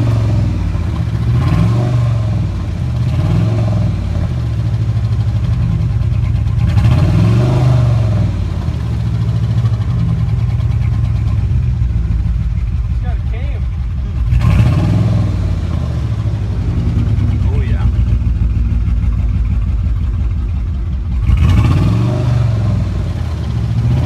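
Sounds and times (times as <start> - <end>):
engine revving: 0.0 - 24.0
fast steady engine knock: 4.1 - 7.2, 8.5 - 14.7, 16.4 - 21.8.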